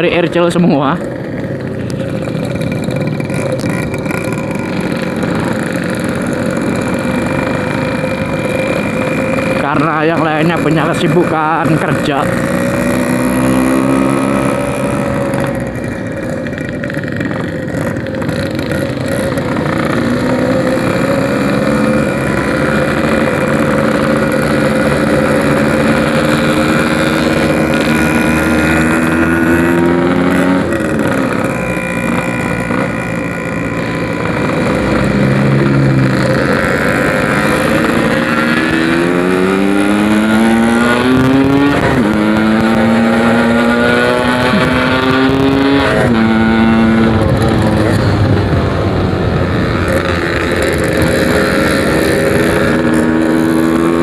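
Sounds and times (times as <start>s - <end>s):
motorcycle engine accelerating: 0.0s - 54.0s.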